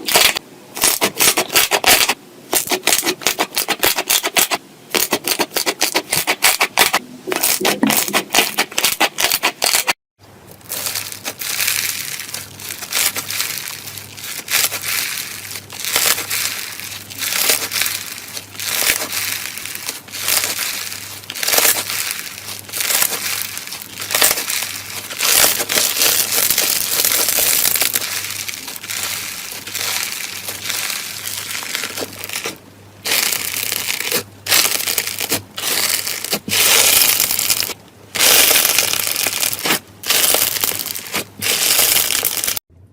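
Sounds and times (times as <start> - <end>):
crunchy slime squeezed by hand: 10.5 - 42.6.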